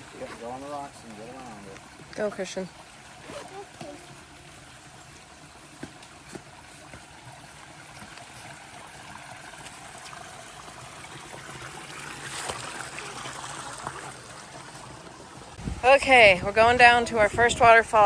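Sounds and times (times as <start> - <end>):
stream trickling over rocks: 0.0 - 18.0.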